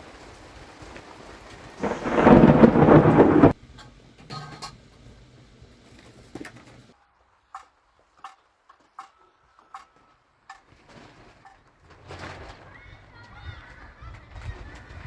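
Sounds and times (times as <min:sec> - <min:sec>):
rain noise: 0:00.0 - 0:03.6.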